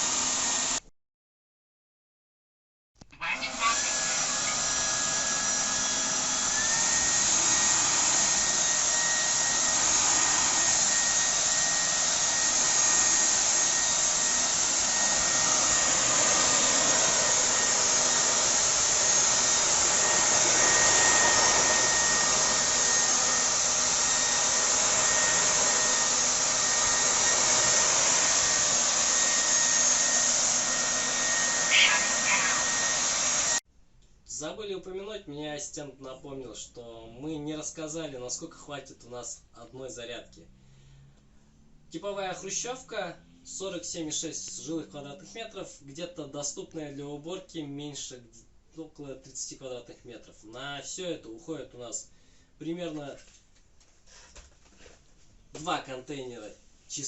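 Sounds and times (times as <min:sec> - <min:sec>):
floor-washing vacuum motor whine: 0:00.0 - 0:00.8, 0:03.4 - 0:33.6.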